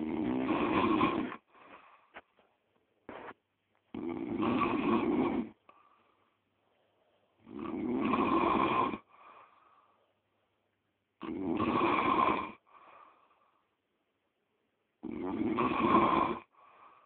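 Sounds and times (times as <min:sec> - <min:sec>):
man snoring loudly: 0:00.0 - 0:01.4, 0:04.0 - 0:05.6, 0:07.4 - 0:09.1, 0:11.2 - 0:12.6, 0:15.0 - 0:16.5.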